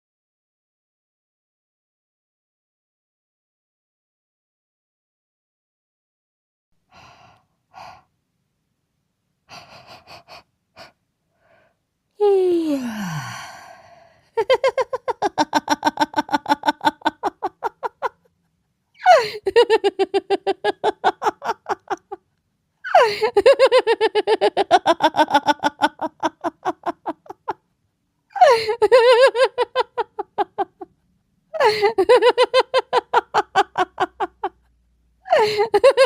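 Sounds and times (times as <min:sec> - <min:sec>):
person laughing rhythmically: 0:14.3 - 0:22.3, 0:22.9 - 0:31.0, 0:31.6 - 0:36.0.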